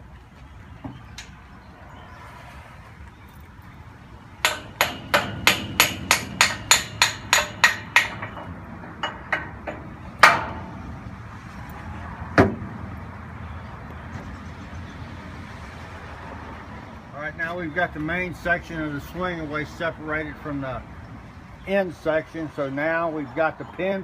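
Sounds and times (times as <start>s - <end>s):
hammer striking steel pins: 4.4s - 11.0s.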